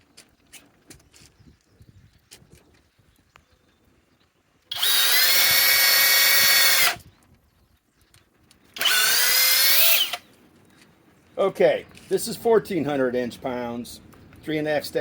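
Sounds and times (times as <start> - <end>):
drill boring into wood: 4.7 - 7.0, 8.8 - 10.2.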